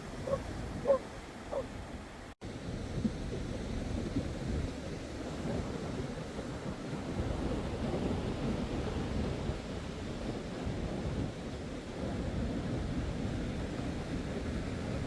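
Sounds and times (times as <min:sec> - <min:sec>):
wind buffeting microphone: 0:00.0 - 0:11.4.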